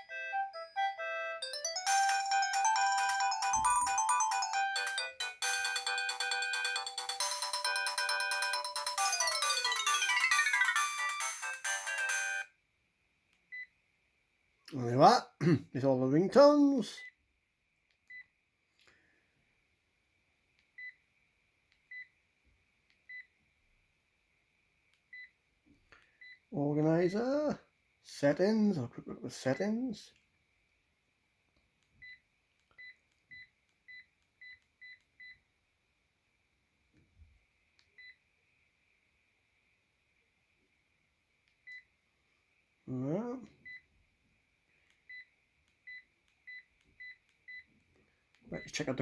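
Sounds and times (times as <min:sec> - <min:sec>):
polyphonic phone ringtone: 0:00.0 - 0:12.5.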